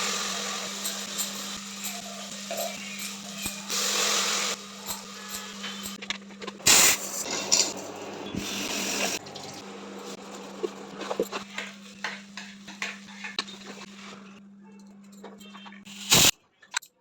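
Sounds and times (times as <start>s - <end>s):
hissing splashing cooking: 0.0s - 6.0s, 6.6s - 14.0s.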